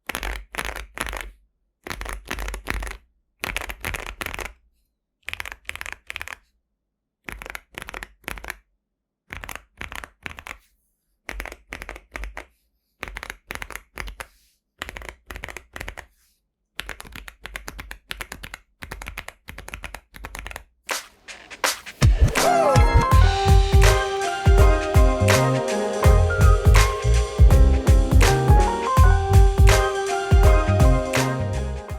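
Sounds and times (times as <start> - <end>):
music: 21.7 - 31.9.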